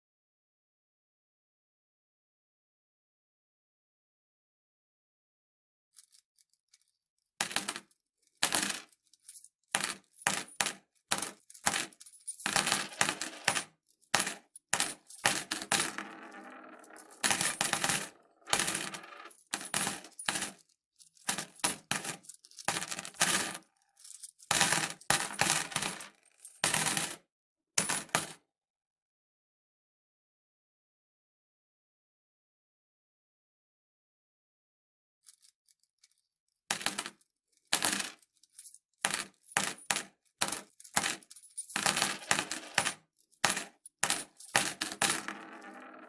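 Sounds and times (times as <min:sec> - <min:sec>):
coins dropping and jingling: 0:07.4 - 0:27.2, 0:36.7 - 0:46.0.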